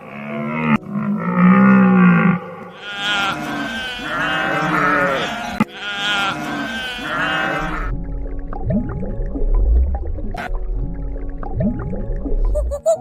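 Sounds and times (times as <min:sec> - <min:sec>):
long low animal calls: 0:00.0 - 0:07.9
bleating: 0:02.7 - 0:07.9.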